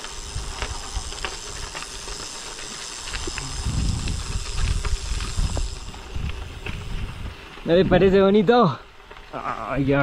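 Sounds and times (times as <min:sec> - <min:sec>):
wind buffeting microphone: 0:03.2 - 0:08.3.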